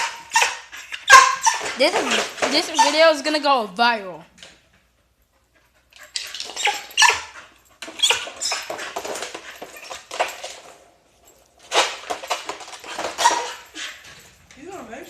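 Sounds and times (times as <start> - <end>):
dog barking: 0.0 - 1.7.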